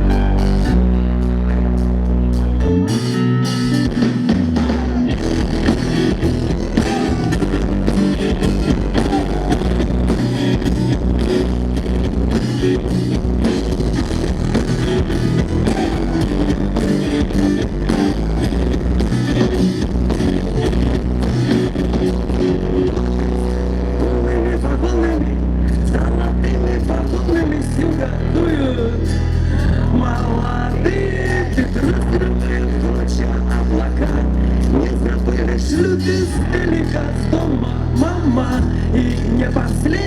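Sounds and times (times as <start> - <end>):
rock band playing live: 0.0 - 25.1.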